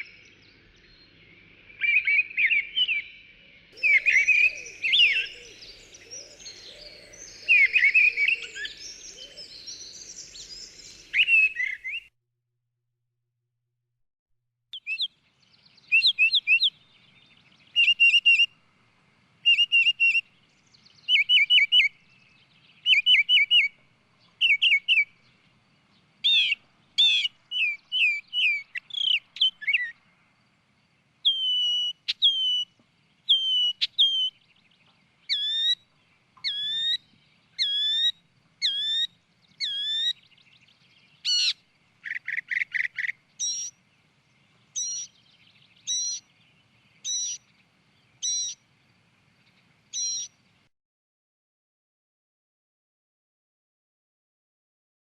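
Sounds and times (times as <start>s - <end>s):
bird whistling song: 1.7s - 12.1s, 14.8s - 18.5s, 19.4s - 25.4s, 26.2s - 30.0s, 31.2s - 43.8s, 44.6s - 48.6s, 49.5s - 50.4s
bird rapid trill: 31.2s - 32.7s, 35.3s - 35.8s, 36.4s - 40.4s, 41.2s - 43.8s, 44.8s - 46.4s, 47.0s - 47.5s, 48.2s - 48.6s, 50.0s - 50.4s.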